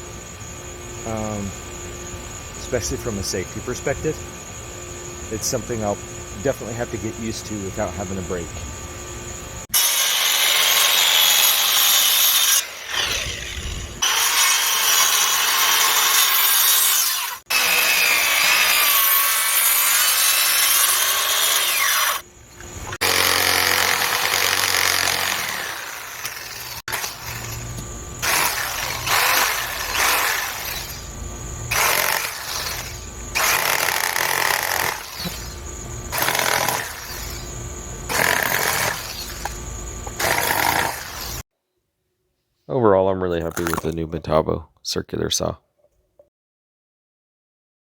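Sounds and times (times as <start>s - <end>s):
circular saw cutting wood: 9.7s - 22.3s, 22.9s - 31.1s, 31.7s - 41.4s.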